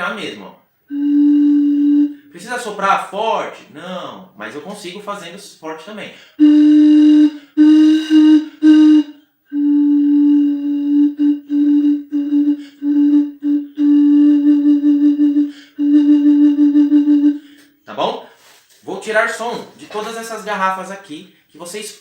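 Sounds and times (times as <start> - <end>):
bottle blown hooting note: 0.9 - 2.3, 6.4 - 17.6.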